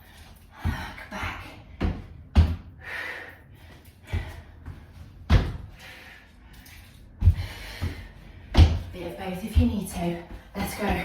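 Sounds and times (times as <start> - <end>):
feet thudding on floor: 4.0 - 5.9, 7.2 - 11.0.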